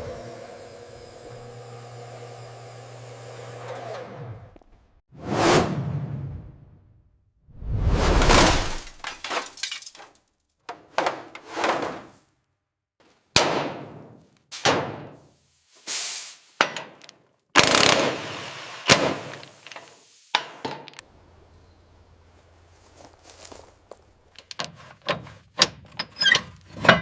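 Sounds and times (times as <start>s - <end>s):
workshop knocks and clatters: 8.4s - 12.2s, 13.3s - 15.3s, 18.9s - 21.0s, 24.4s - 27.0s.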